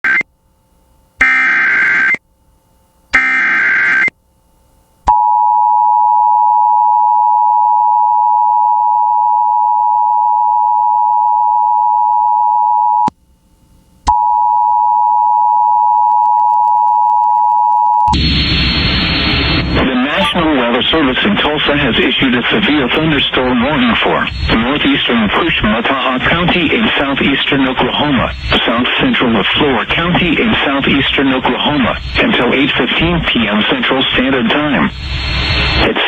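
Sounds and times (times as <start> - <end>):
data bursts on radio: 19.5 - 36.0
two-tone attention signal: 20.0 - 20.6.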